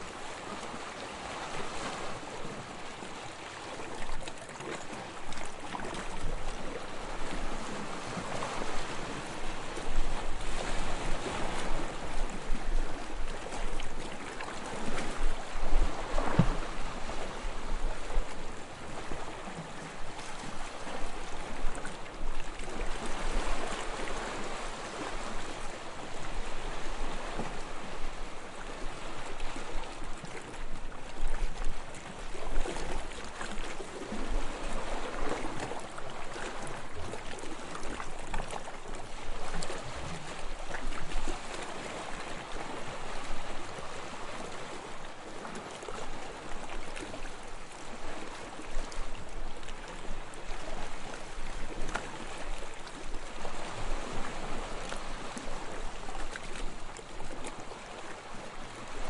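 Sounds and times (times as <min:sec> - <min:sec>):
waves lapping: 0:00.0 - 0:59.0.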